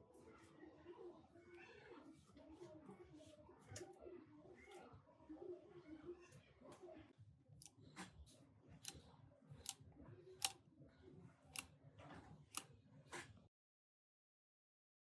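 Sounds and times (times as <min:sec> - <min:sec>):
faint low background noise: 0:00.0 - 0:07.8.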